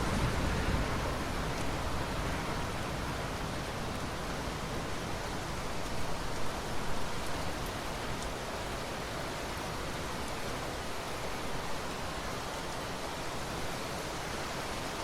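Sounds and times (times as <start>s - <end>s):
steady rain falling: 0.0s - 15.0s.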